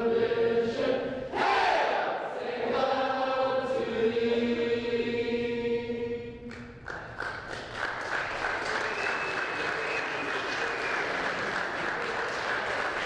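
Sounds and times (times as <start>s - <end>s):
audience applause and cheering: 6.9s - 13.0s.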